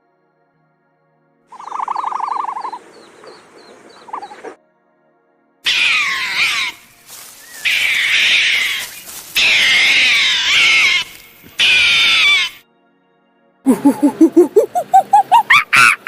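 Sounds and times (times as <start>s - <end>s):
animal calling with sliding pitch: 7.6s - 12.6s, 13.7s - 16.0s.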